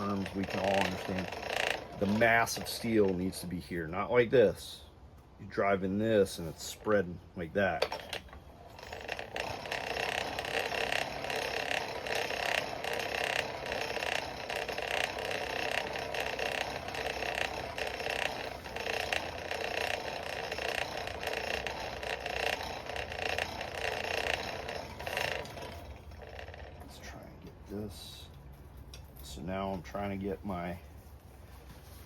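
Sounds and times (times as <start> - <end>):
forge blower running: 0.0 - 3.5, 7.8 - 27.5.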